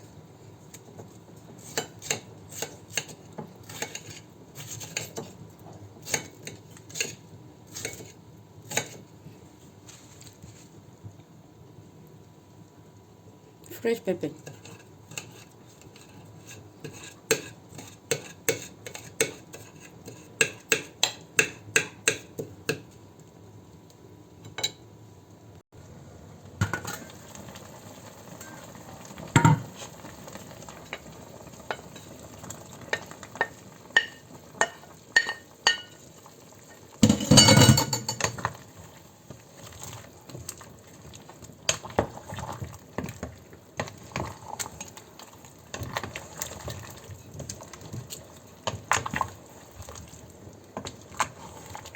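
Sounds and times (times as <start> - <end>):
light sizzling: 0.0 - 51.9
spoon stirring in cooking pot: 0.6 - 9.1, 14.4 - 23.0, 29.2 - 51.9.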